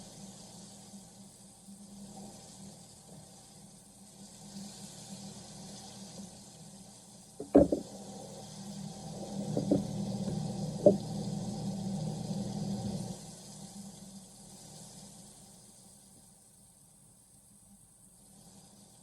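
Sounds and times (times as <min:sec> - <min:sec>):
cookware knocks and clatter: 0:07.4 - 0:07.8, 0:09.6 - 0:09.8
steady low hum: 0:07.4 - 0:13.2.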